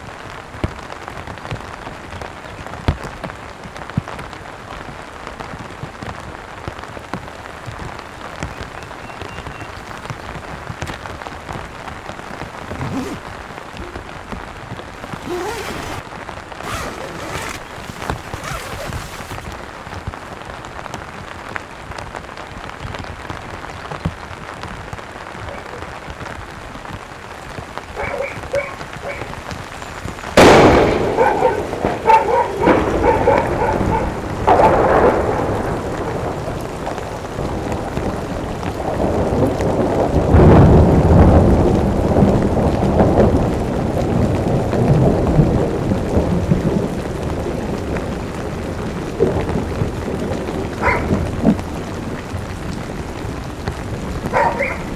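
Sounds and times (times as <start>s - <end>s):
steady rain: 0.0s - 54.9s
thunderclap: 25.5s - 54.9s
rolling thunder: 27.9s - 54.9s.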